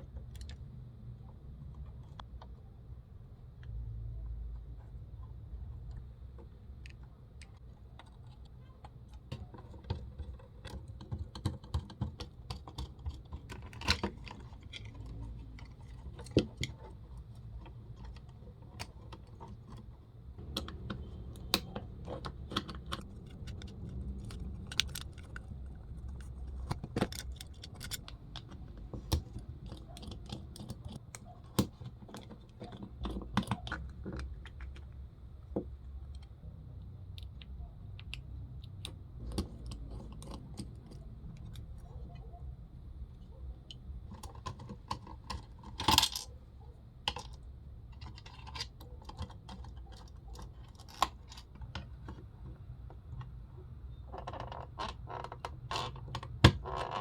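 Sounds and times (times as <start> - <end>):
small hard parts clicking: 5.2 - 35.1
low handling rumble: 20.3 - 29.7.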